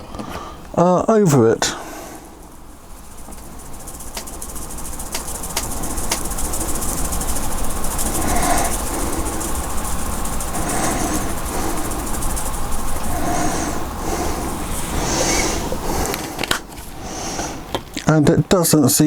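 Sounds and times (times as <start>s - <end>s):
grass fibres rattling in shaker: 0.8s - 19.0s
sharp clicks: 4.0s - 13.2s.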